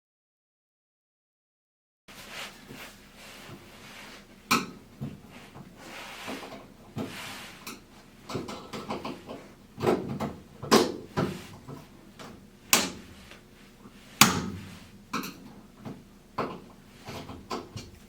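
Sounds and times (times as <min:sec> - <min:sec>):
knocks and clunks of metal panels: 0:08.2 - 0:13.2, 0:14.2 - 0:18.0.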